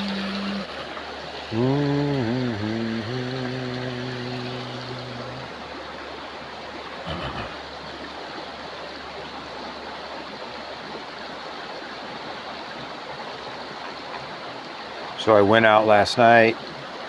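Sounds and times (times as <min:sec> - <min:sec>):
man singing held note: 0:01.5 - 0:05.5.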